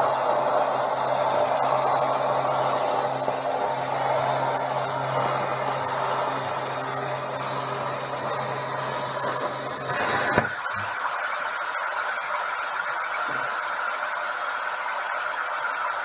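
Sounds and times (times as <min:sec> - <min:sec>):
air hissing: 0:00.0 - 0:11.0
plasma cutter hissing: 0:00.0 - 0:11.3.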